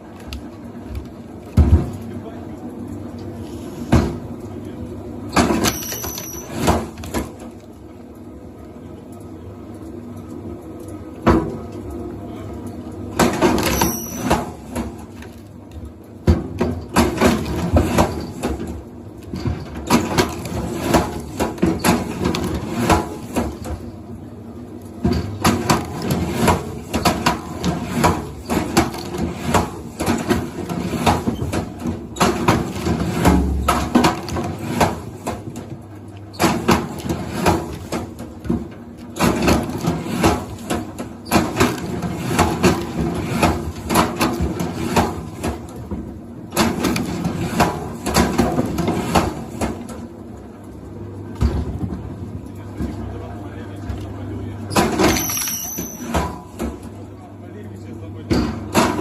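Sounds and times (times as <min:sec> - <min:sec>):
hard objects knocking and clattering: 0:25.0 - 0:35.8.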